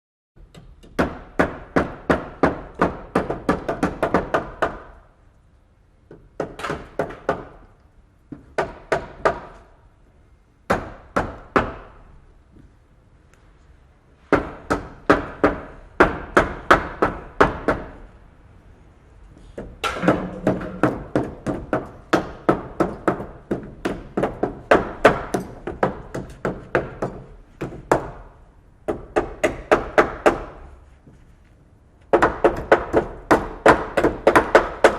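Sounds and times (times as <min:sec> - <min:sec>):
hammer driving nails into wood: 0:00.4 - 0:05.0, 0:06.1 - 0:07.7, 0:19.6 - 0:30.6, 0:32.1 - 0:34.9.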